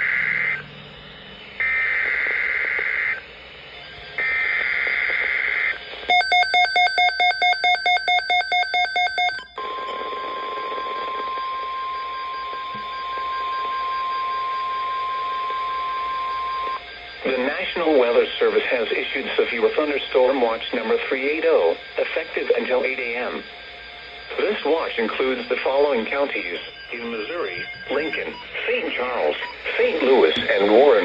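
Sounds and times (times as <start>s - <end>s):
steady warning alarm tone: 0.0s - 31.0s
rapid beeping: 13.0s - 31.0s
buzzy data bursts: 13.8s - 31.0s.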